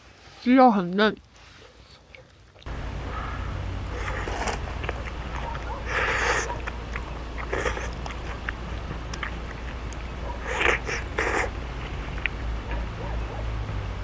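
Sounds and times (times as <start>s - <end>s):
chewing: 1.6s - 2.7s, 3.8s - 12.5s
steady low hum: 2.6s - 14.0s.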